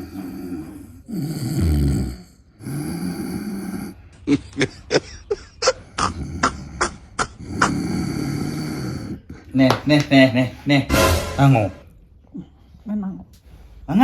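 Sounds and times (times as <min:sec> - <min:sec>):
person snoring: 0:00.0 - 0:04.0, 0:06.0 - 0:09.3.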